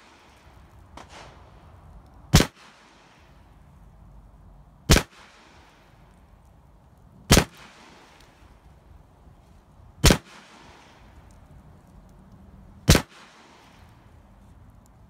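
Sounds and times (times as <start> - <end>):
rifle shots with echo: 0.0 - 1.6, 2.3 - 3.2, 4.9 - 5.7, 7.3 - 8.2, 10.0 - 11.0, 12.9 - 13.8.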